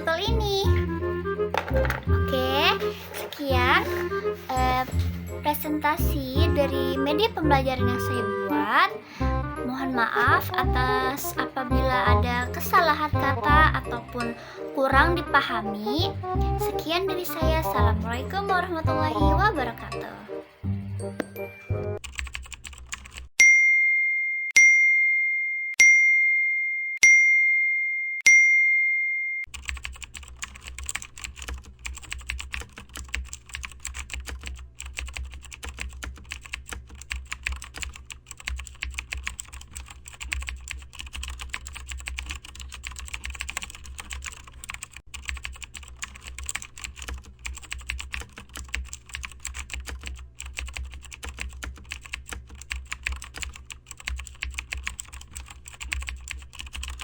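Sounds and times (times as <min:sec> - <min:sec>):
keyboard typing clicks: 0:22.0 - 0:23.3, 0:29.5 - 0:57.0
high bell-like dings: 0:23.4 - 0:29.5.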